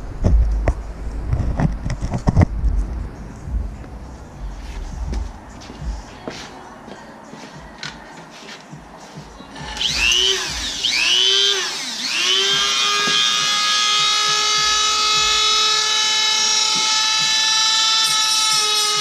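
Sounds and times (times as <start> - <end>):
rotary tool motor whine: 9.6 - 19.0.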